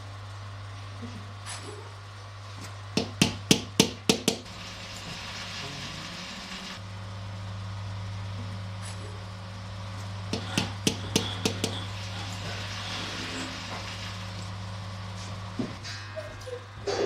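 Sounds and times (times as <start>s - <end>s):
low workshop hum: 0.0s - 17.0s
sharp hammer taps: 3.0s - 4.4s, 10.3s - 11.8s
hiss: 4.5s - 6.8s, 10.3s - 14.5s.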